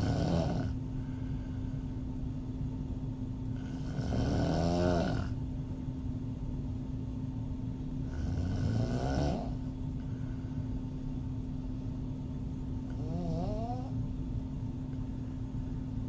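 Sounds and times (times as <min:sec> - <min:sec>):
woman snoring: 0:00.0 - 0:00.8, 0:03.6 - 0:05.4, 0:08.0 - 0:09.7, 0:12.9 - 0:14.0
faint hum: 0:00.0 - 0:16.0.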